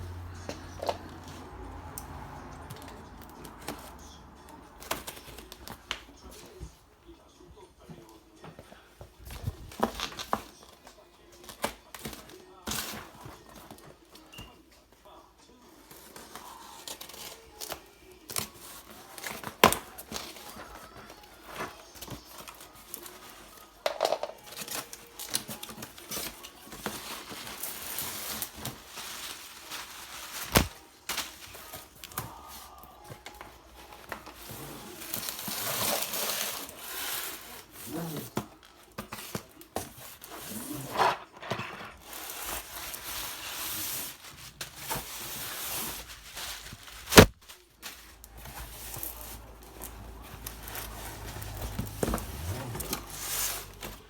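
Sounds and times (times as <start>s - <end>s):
packaging tearing and crinkling: 24.4s - 32.4s, 34.4s - 37.9s, 39.2s - 54.0s.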